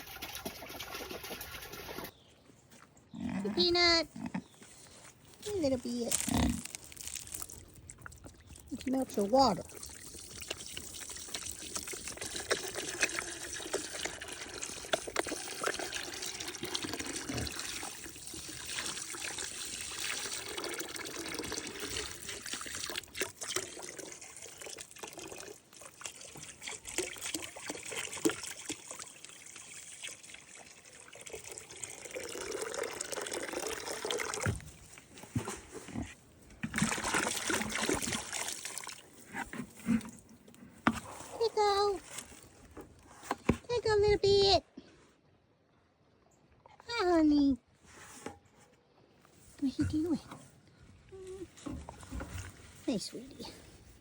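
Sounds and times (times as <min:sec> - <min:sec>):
water pouring into container: 0:00.0 - 0:02.1, 0:05.9 - 0:35.0, 0:36.6 - 0:41.0.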